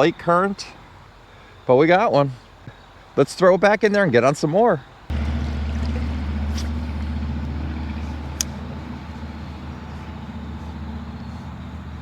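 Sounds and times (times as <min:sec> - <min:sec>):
vehicle engine droning: 0:05.1 - 0:12.0.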